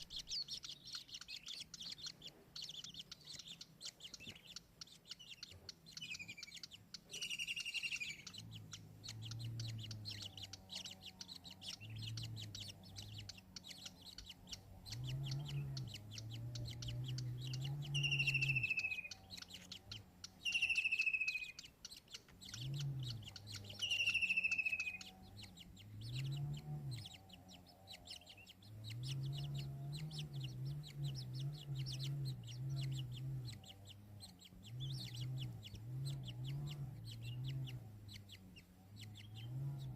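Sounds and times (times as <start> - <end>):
bird whistling downward notes: 0.0 - 2.1, 6.0 - 21.7, 22.4 - 34.0
low bird clucking: 0.0 - 39.9.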